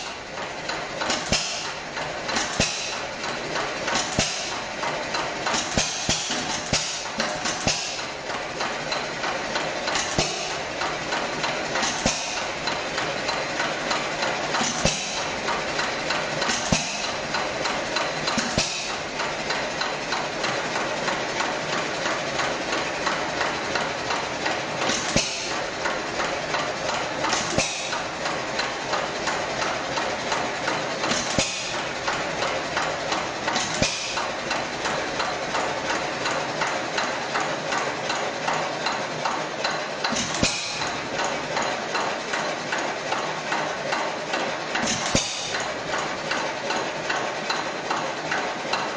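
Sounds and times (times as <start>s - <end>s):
flywheel mechanical clatter: 0.0s - 48.9s.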